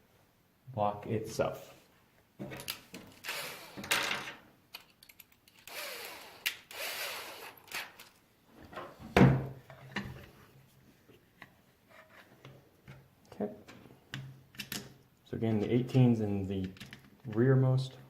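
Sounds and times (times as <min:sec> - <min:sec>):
small plastic parts clicking and scraping: 0:04.7 - 0:05.7.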